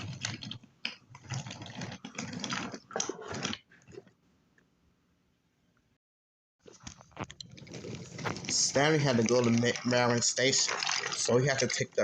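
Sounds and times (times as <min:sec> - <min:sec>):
wooden toy train clattering on track: 0:07.8 - 0:11.9.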